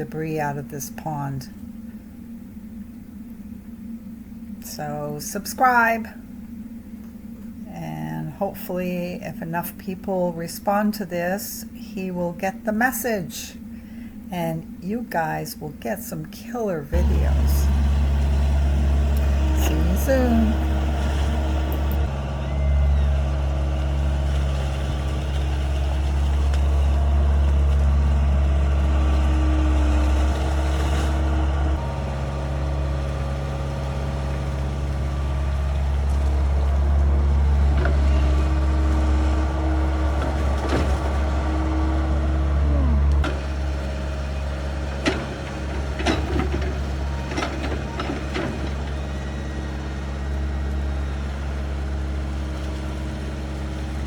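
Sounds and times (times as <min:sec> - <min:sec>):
excavator diesel engine running: 0:16.9 - 0:54.0.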